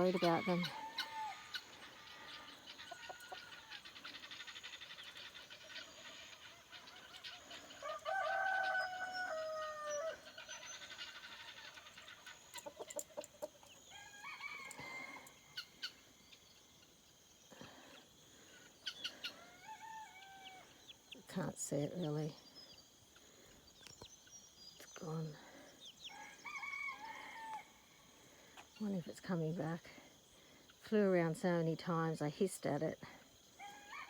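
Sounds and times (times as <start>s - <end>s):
rooster crowing: 0.0s - 3.8s, 6.8s - 10.5s, 13.9s - 15.6s, 26.1s - 27.9s, 33.6s - 34.0s
chickens clucking: 0.0s - 22.3s.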